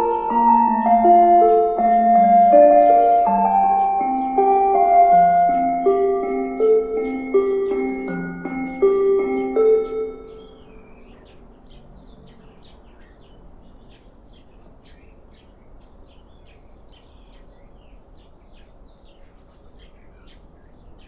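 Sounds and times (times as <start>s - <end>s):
loudspeaker chime: 0.0s - 10.7s
faint outdoor background noise: 0.0s - 21.0s
small birds chirping: 0.0s - 21.0s.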